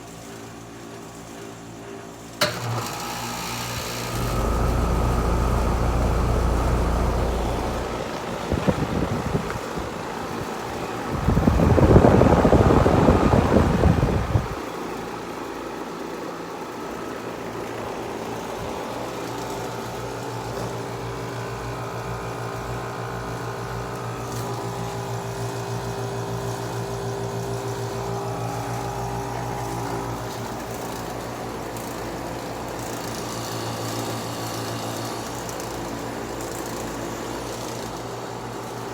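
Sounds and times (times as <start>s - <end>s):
air conditioner running hum: 0.4s - 38.9s
loud low rumbling: 4.3s - 8.1s.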